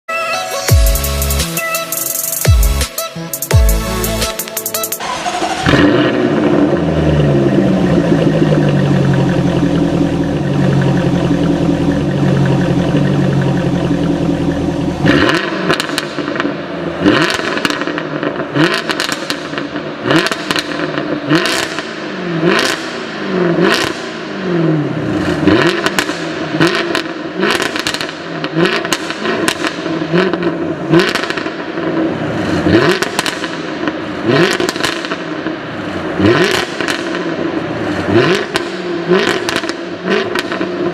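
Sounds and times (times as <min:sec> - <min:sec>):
car engine running and revving: 0:05.0 - 0:40.9
exhaust crackling pops: 0:17.2 - 0:21.9, 0:25.6 - 0:32.0, 0:32.9 - 0:35.6, 0:36.4 - 0:37.5.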